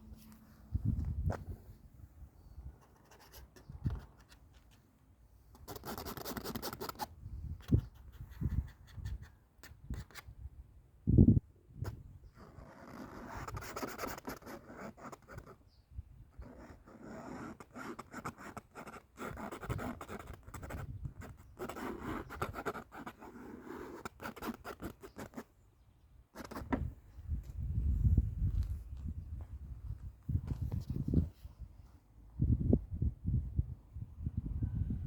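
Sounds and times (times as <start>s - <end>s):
drawing tool scratching surface: 12.4s - 15.6s, 16.4s - 25.4s, 26.4s - 26.8s.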